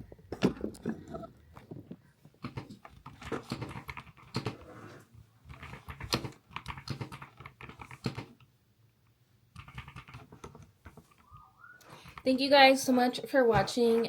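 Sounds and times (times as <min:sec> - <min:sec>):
mechanical keyboard keys clacking: 0:02.4 - 0:04.6, 0:05.5 - 0:08.4, 0:09.6 - 0:11.2.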